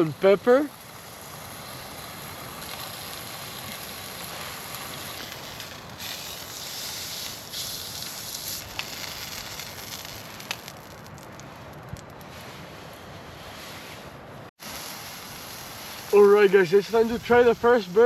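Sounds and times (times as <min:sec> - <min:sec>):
patties sizzling in a frying pan: 0:00.0 - 0:11.0.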